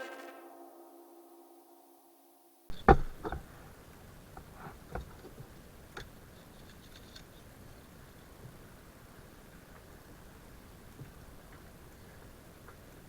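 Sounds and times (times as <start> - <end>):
faint steady hiss: 0.0 - 13.0
sharp knocks and clicks: 2.7 - 3.5.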